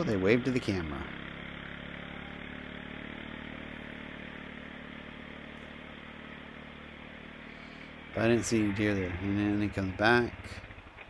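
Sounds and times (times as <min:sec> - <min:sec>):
atv engine idling: 0:00.0 - 0:11.0.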